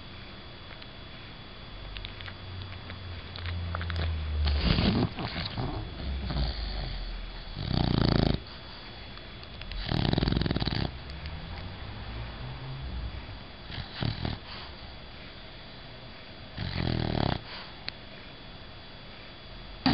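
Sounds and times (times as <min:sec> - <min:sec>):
dog breathing: 0:03.1 - 0:18.4
dog snoring: 0:03.4 - 0:08.9, 0:09.6 - 0:15.0, 0:16.5 - 0:17.8.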